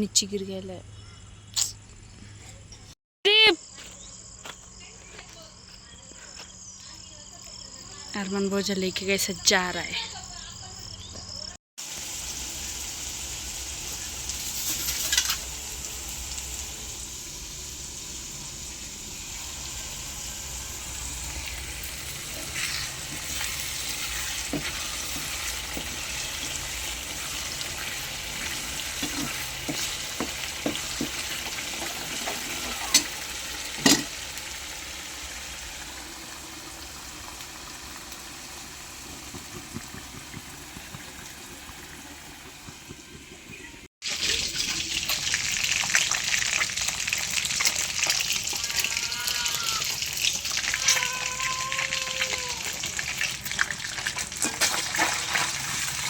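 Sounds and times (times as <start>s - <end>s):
food frying in a pan: 11.8s - 56.0s.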